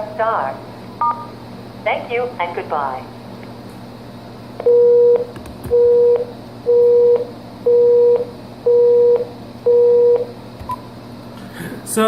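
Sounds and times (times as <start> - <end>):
low telephone line beeps: 4.6 - 10.3.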